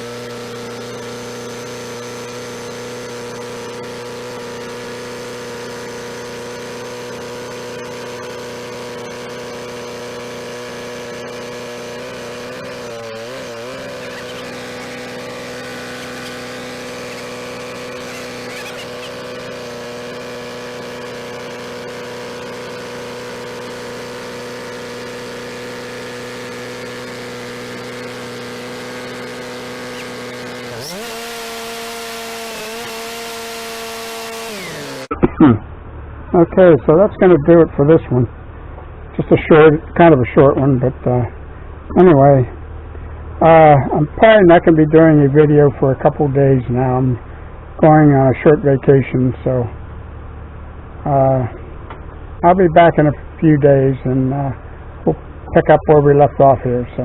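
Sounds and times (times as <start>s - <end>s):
sawmill engine running: 0.0s - 57.0s.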